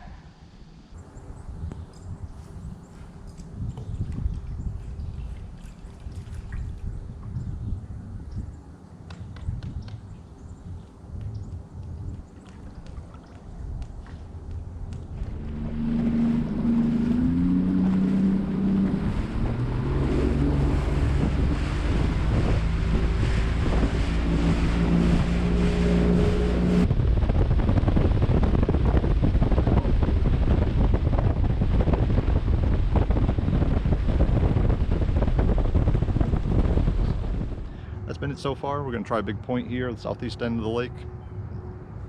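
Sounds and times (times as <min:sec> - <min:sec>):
wind buffeting microphone: 0:00.9 - 0:42.0
outboard motor rumble: 0:01.0 - 0:42.0.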